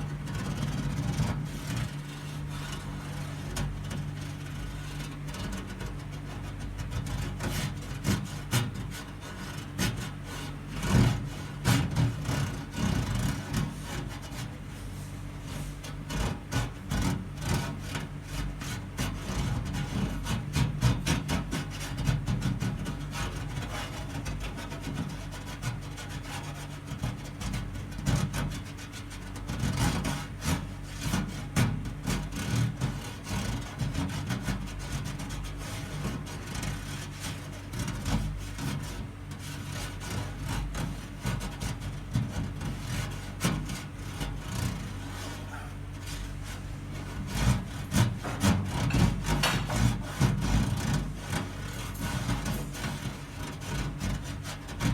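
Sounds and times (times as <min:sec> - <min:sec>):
steady low hum: 0:00.0 - 0:54.9
computer case scraping and rattling: 0:32.0 - 0:54.9.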